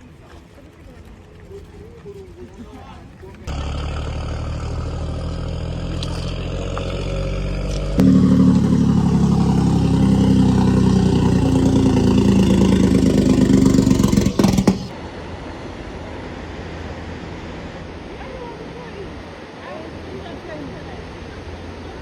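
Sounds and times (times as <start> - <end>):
vehicle engine running: 3.5 - 15.0.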